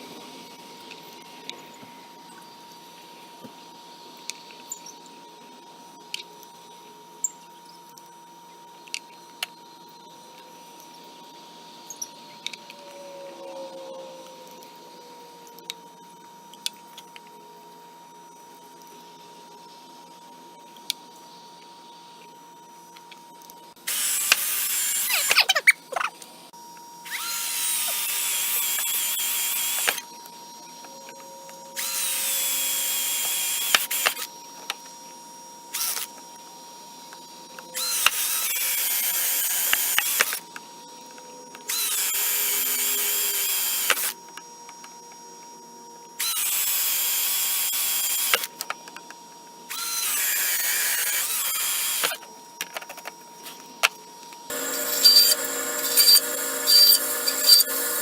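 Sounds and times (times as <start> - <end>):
power drill drilling: 23.9 - 25.4, 27.1 - 30.0, 31.8 - 34.3, 35.8 - 36.1, 37.8 - 40.4, 41.7 - 44.1, 46.2 - 48.5, 49.7 - 52.2, 54.5 - 58.0.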